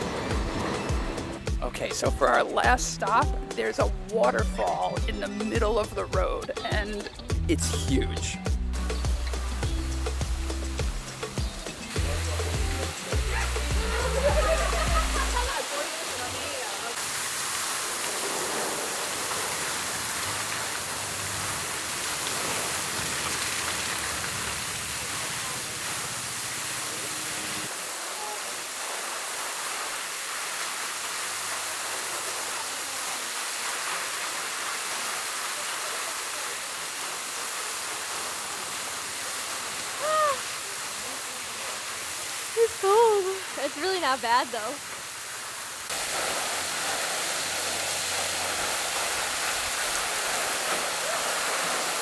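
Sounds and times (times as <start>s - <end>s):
waterfall rushing: 0.0s - 52.0s.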